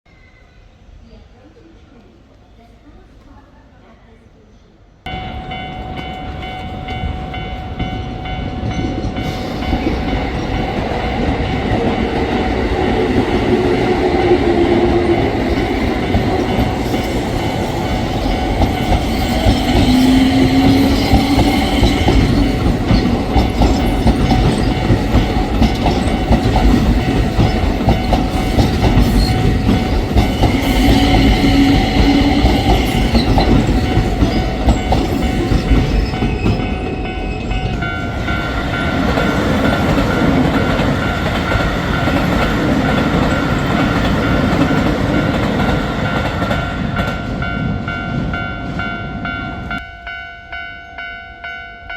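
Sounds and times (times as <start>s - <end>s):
train rumble: 5.0s - 50.6s
level crossing alarm ringing: 5.1s - 51.9s
train motor whine: 16.3s - 36.9s.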